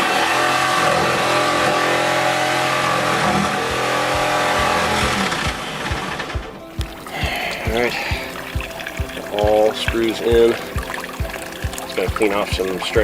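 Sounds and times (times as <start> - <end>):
jigsaw cutting: 0.0 - 6.4.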